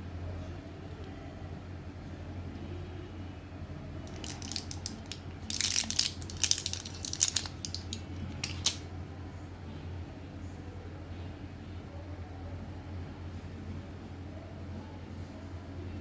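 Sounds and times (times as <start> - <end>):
packaging crackling and clicking: 4.1 - 8.8.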